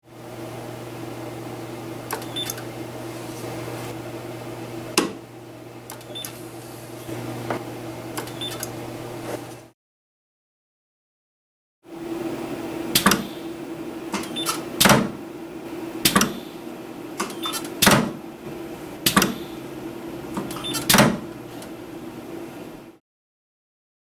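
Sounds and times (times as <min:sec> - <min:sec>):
steady low hum: 0:12.0 - 0:22.9.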